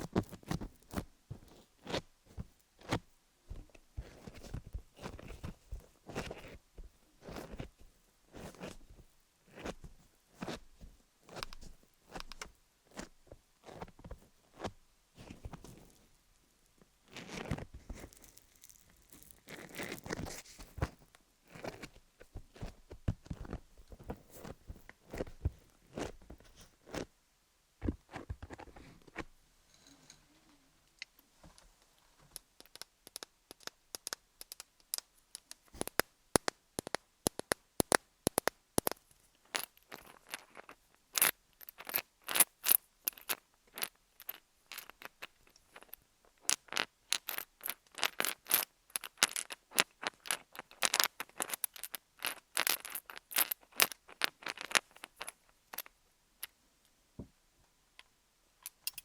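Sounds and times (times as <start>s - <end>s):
roller clicking over gems: 32.4s - 56.5s.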